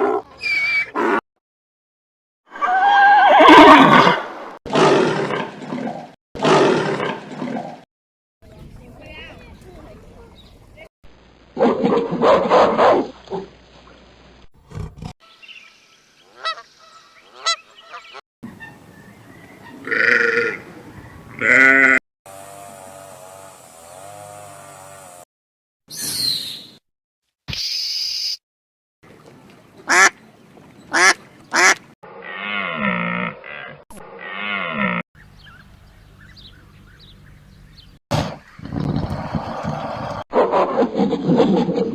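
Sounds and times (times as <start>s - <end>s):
sheep bleating: 19.8s - 20.6s, 21.4s - 22.0s.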